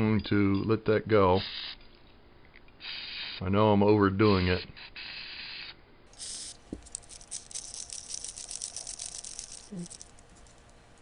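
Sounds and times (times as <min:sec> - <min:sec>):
aerosol can spraying: 0:01.4 - 0:01.8, 0:02.8 - 0:03.4, 0:04.4 - 0:09.7.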